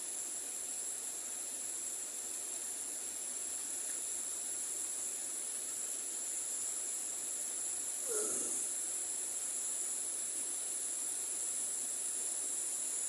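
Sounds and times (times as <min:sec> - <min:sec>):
soft outdoor hiss: 0:00.0 - 0:13.0
insects chirping shrilly: 0:07.6 - 0:13.0.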